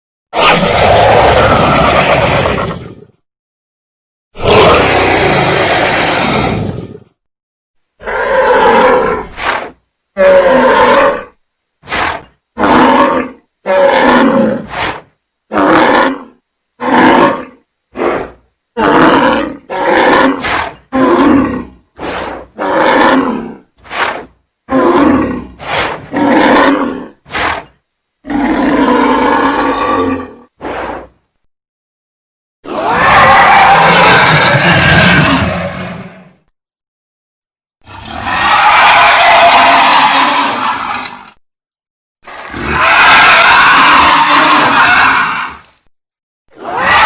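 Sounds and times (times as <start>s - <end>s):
dragon roars and growls: 0.4s - 3.2s, 4.4s - 7.2s, 10.2s - 31.1s, 32.6s - 36.4s, 37.9s - 41.4s, 42.3s - 45.7s, 46.5s - 47.0s.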